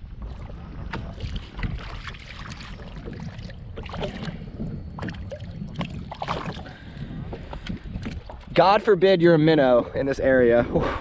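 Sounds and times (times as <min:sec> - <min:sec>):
wind rumbling on microphone: 0:00.0 - 0:11.0
short water splashes: 0:00.3 - 0:06.8.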